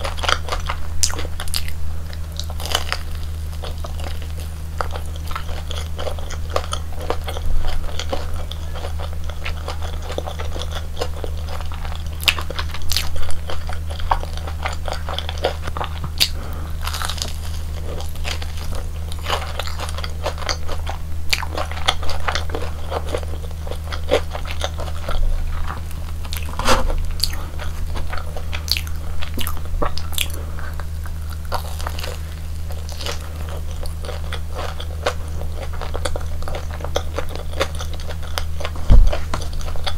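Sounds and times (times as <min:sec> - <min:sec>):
crunchy eating and chewing: 0:00.0 - 0:39.9
low electrical hum: 0:00.0 - 0:39.9.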